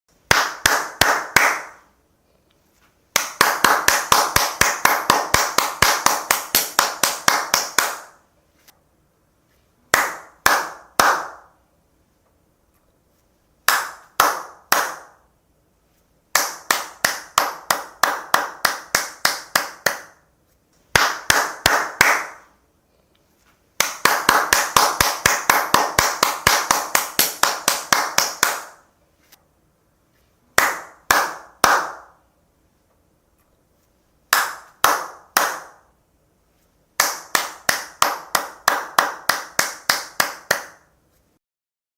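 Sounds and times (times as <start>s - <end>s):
person clapping hands: 0.2s - 1.9s, 3.1s - 8.2s, 9.9s - 11.6s, 13.6s - 15.2s, 16.3s - 20.2s, 20.9s - 22.6s, 23.8s - 28.9s, 30.6s - 32.2s, 34.3s - 35.9s, 37.0s - 40.9s.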